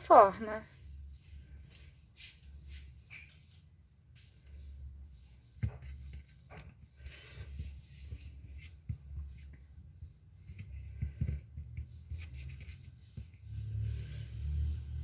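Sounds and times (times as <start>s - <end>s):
fingers rubbing clay: 4.2s - 15.0s.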